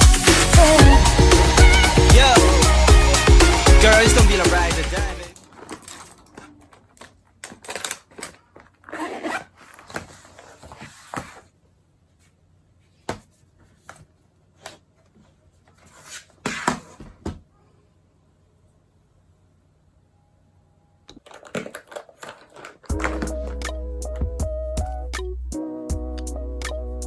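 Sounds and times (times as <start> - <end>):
handling rustling: 5.3 - 11.5, 21.1 - 24.4.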